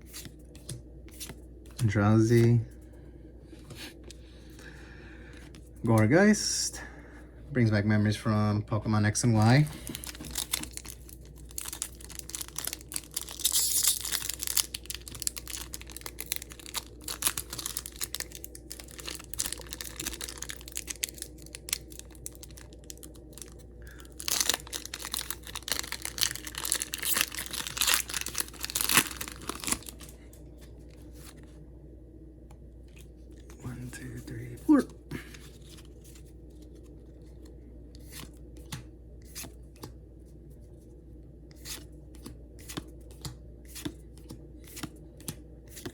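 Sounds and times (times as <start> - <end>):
cards rustling and flicking: 0.0 - 2.5, 9.6 - 23.6, 41.6 - 45.9
foil wrappers crinkling and tearing: 9.4 - 30.2.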